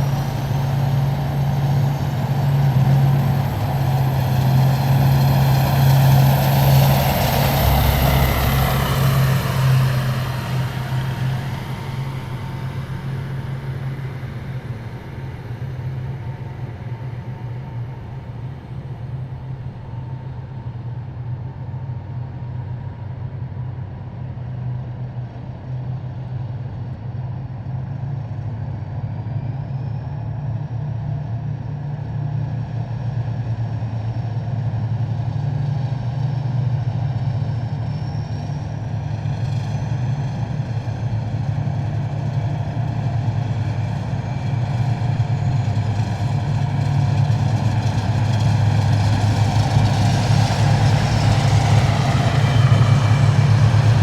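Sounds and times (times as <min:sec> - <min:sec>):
heavy vehicle engines passing: 0:00.0 - 0:20.2, 0:38.4 - 0:54.0
low engine drone: 0:00.0 - 0:54.0.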